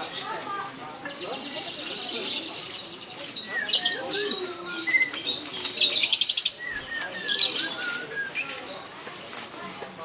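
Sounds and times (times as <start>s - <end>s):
songbirds trilling chatter: 0.0s - 10.0s
sliding whistled bird notes: 6.4s - 8.6s.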